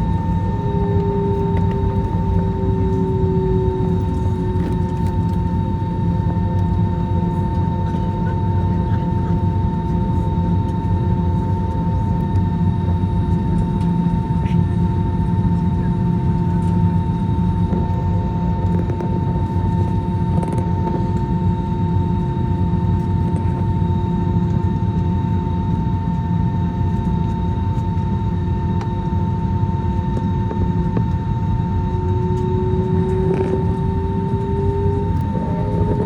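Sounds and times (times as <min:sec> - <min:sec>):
engine whining tones: 0:00.0 - 0:06.0, 0:31.6 - 0:36.0
jet engine drone in cabin: 0:00.0 - 0:36.0.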